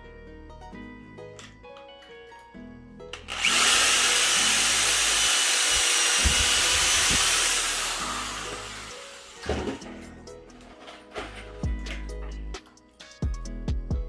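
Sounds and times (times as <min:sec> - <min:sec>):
power drill driving a screw: 0:03.2 - 0:09.5.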